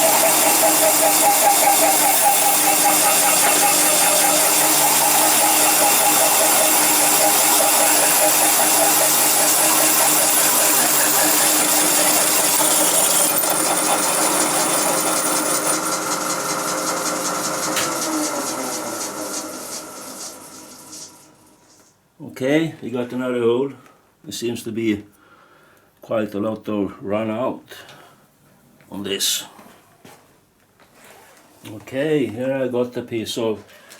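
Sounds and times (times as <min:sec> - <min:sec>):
hole saw grinding hiss: 0:00.0 - 0:22.0.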